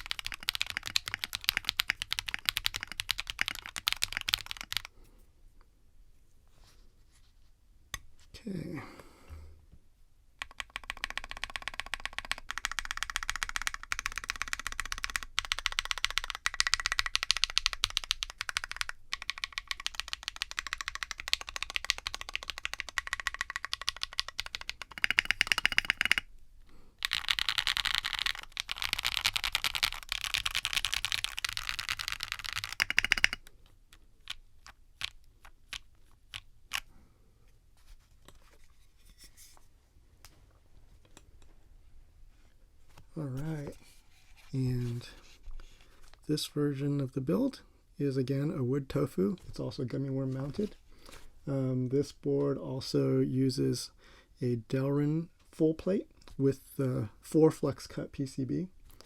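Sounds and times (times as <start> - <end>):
fast keyboard typing: 0.0 - 4.9, 10.4 - 26.3, 27.0 - 33.5, 34.2 - 36.8.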